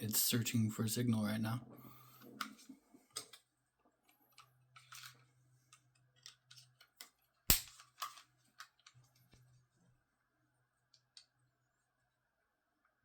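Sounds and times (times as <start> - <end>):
loud sharp snap: 7.5 - 7.7.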